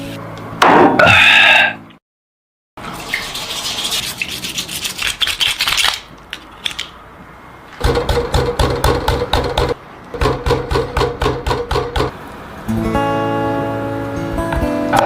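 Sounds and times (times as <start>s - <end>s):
scratchy rubbing and scraping: 3.0s - 6.0s
strummed guitar music: 12.7s - 15.0s.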